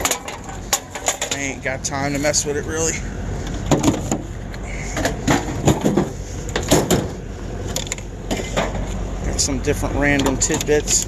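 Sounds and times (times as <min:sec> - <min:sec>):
scrap metal clanking: 0:00.0 - 0:02.4, 0:03.5 - 0:09.0.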